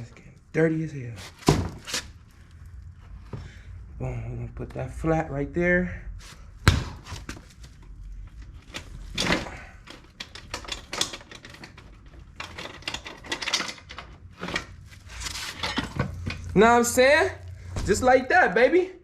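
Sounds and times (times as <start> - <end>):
tools clicking and knocking: 8.4 - 14.8.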